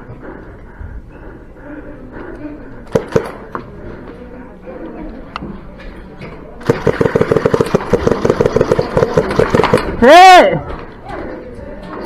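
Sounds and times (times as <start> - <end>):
airsoft gunfire: 2.9 - 3.6, 6.6 - 10.0.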